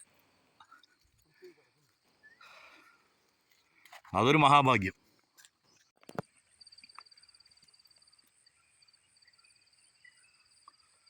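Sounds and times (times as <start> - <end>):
faint bird chirps: 0.6 - 3.2, 5.6 - 11.0
faint insect trill: 4.8 - 11.0.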